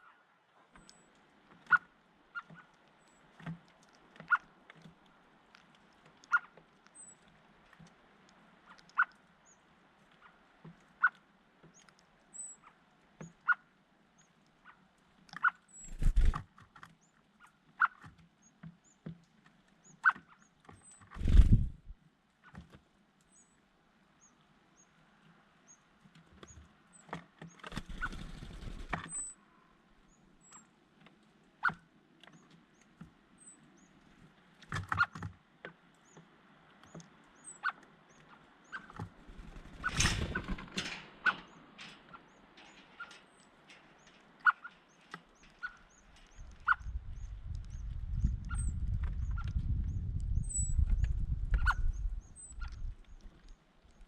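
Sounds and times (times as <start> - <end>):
small birds chirping: 0.0 - 35.2, 35.8 - 54.0
low rumble: 21.2 - 22.0.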